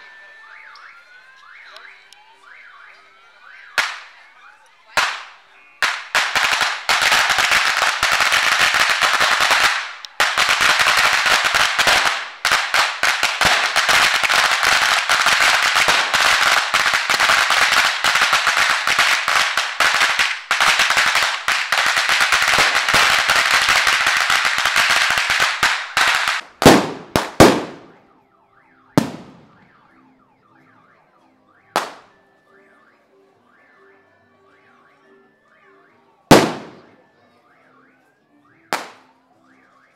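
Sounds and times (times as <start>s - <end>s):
firecrackers crackling: 3.4s - 4.2s, 4.9s - 28.1s, 29.0s - 29.7s, 31.7s - 32.1s, 36.3s - 37.0s, 38.7s - 39.0s
loud echoing bangs: 26.6s - 27.9s.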